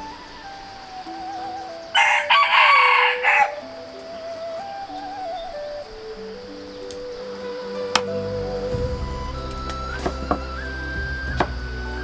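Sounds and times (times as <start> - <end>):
slow melodic background music: 0.0 - 12.0
rooster crowing: 1.8 - 3.6.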